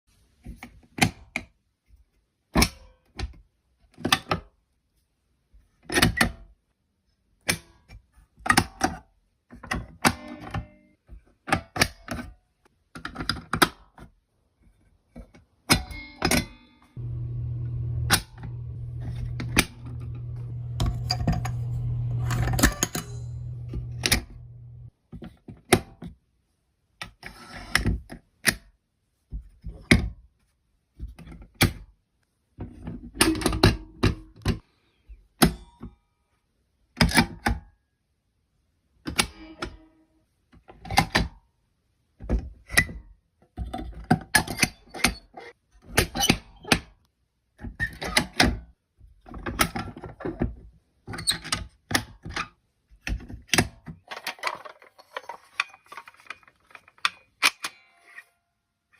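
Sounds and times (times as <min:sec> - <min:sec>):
knocks and clicks: 0:15.7 - 0:24.9
low steady hum: 0:15.9 - 0:24.9.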